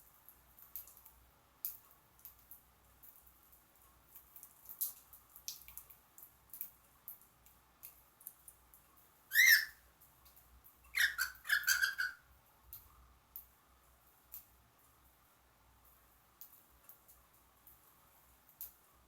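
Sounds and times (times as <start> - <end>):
bird chirps: 9.3 - 9.7, 11.0 - 12.2
loud bird call: 9.3 - 9.7, 11.0 - 12.2.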